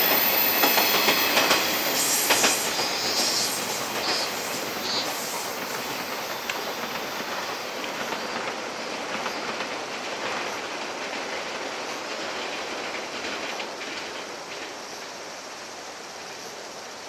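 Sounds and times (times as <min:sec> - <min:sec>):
high wheel squeal: 0:00.0 - 0:07.7
wheels clicking over rail joints: 0:00.0 - 0:15.2
electric train running past: 0:00.0 - 0:17.0.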